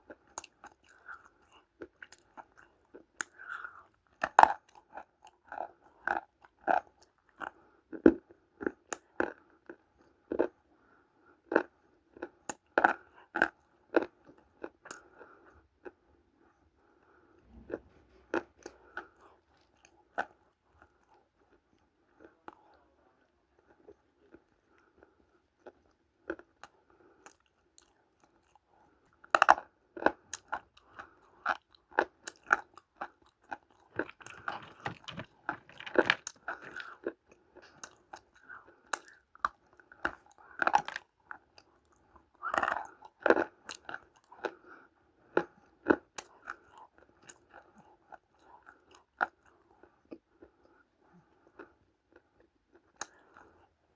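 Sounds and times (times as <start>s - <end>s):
clay crunching in mouth: 0.4s - 4.8s, 30.3s - 44.6s, 51.5s - 53.7s.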